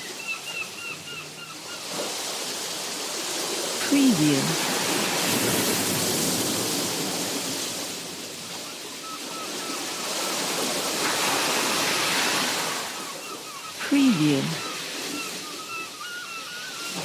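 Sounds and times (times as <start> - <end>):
sea waves washing on shore: 0.0 - 17.0.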